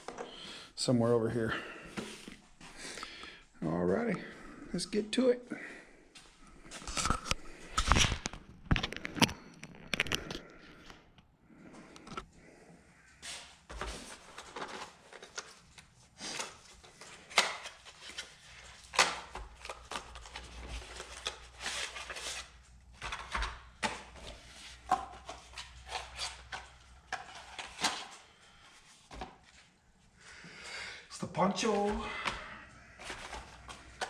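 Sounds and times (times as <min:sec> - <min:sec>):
packaging rustling and scraping: 0:06.7 - 0:11.0, 0:13.3 - 0:29.7, 0:32.9 - 0:34.0
packaging clicks and snaps: 0:06.9 - 0:11.0.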